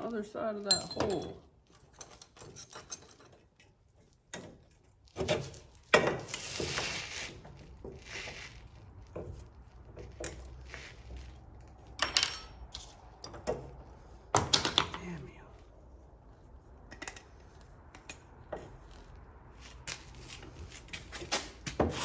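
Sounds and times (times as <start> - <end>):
clunks and knocks of parts: 0.7 - 8.0, 11.8 - 15.0
scraping rub: 5.3 - 11.9, 16.1 - 22.0.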